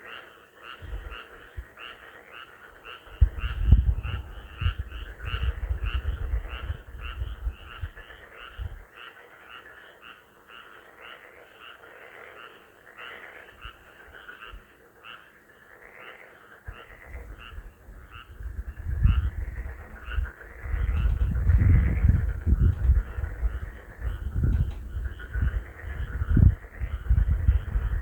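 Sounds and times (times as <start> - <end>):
frogs croaking: 0.0 - 28.0
loud low rumble: 18.4 - 28.0.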